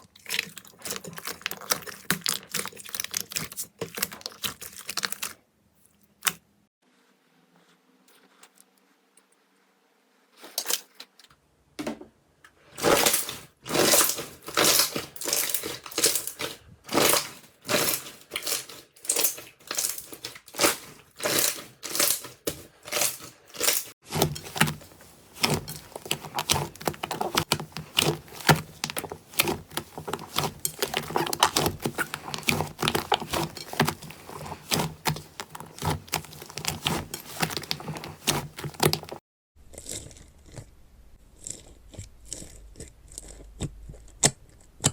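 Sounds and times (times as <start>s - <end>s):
slime squishing by hand: 0.0s - 6.5s, 12.8s - 39.2s.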